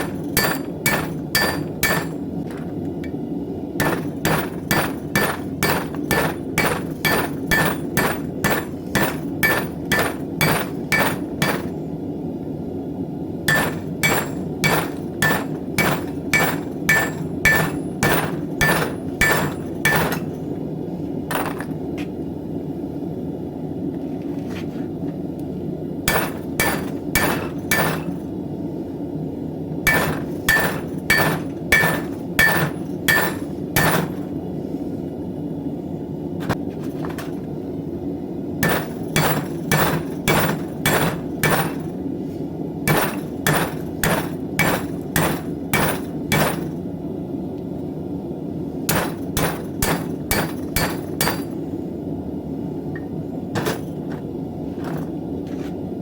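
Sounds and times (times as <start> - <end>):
hammer striking anvil: 0.0 - 2.6, 3.8 - 11.7, 13.5 - 20.4, 26.1 - 28.2, 29.9 - 34.2, 38.6 - 41.8, 42.9 - 46.7, 48.9 - 51.6.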